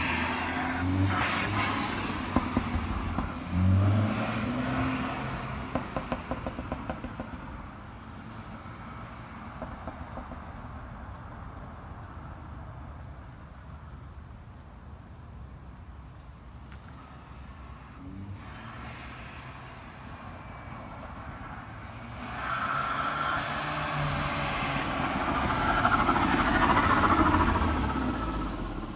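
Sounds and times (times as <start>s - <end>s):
car engine revving: 0.0s - 7.3s, 21.9s - 28.9s.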